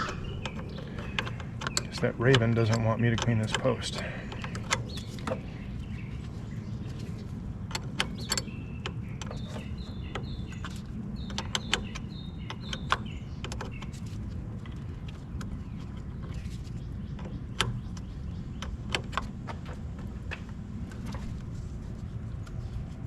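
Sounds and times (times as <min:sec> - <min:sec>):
bird chirping: 0:00.0 - 0:23.0
steady low rumble: 0:00.0 - 0:23.0.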